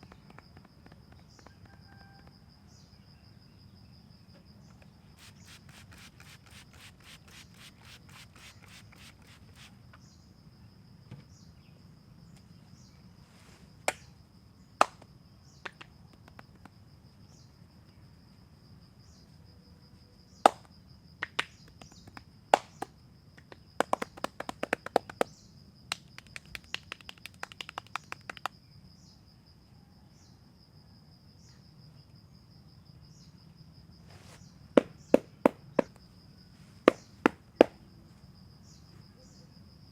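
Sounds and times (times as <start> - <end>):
high insect drone: 0.0 - 39.9
hand slaps on head: 21.3 - 25.3, 25.9 - 28.5, 36.9 - 37.8.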